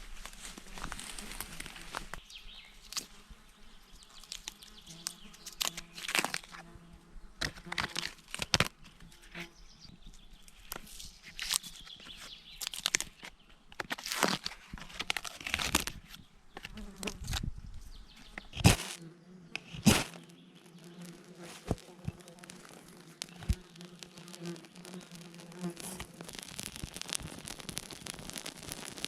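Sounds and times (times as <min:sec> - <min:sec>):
crunching and rustling plant material: 0:00.0 - 0:06.8, 0:07.4 - 0:29.0
sharp snaps and clicks: 0:07.5 - 0:08.7, 0:10.5 - 0:17.4, 0:19.6 - 0:29.0.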